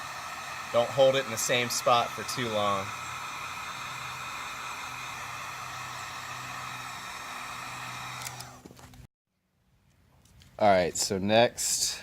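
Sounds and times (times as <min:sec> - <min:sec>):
heat gun blowing hiss: 0:00.0 - 0:08.8.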